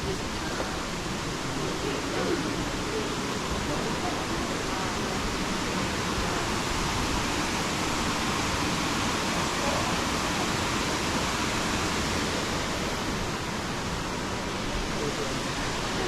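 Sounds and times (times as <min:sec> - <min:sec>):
river water rushing: 0:00.0 - 0:16.0.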